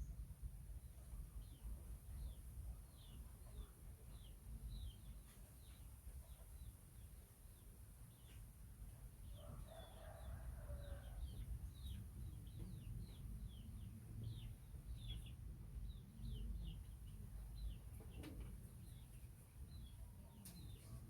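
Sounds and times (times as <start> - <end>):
birds chirping: 9.4 - 21.0.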